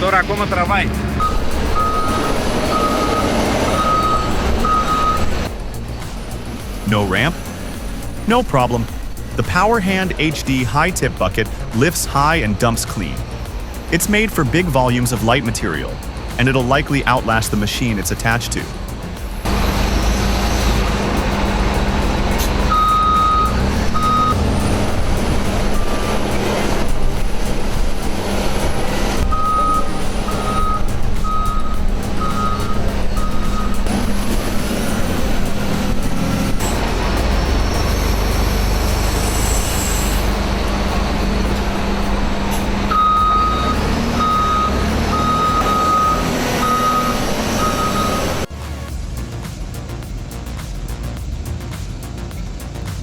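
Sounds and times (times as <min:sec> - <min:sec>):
diesel engine running: 0:00.0 - 0:53.0
reversing alarm beeping: 0:01.2 - 0:05.5, 0:22.4 - 0:24.4, 0:29.2 - 0:33.9, 0:37.5 - 0:48.5.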